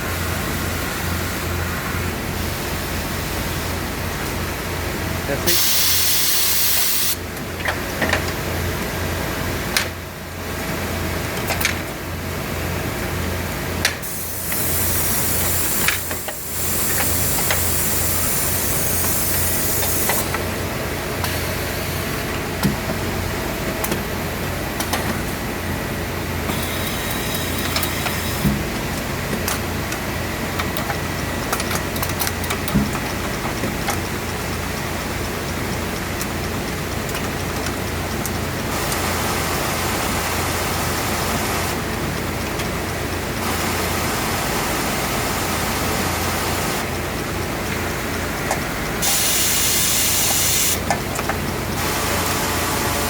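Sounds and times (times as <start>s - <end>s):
air hissing: 5.5s - 7.2s, 14.0s - 20.3s, 49.0s - 50.8s
knitting machine humming: 25.2s - 32.7s, 35.5s - 53.0s.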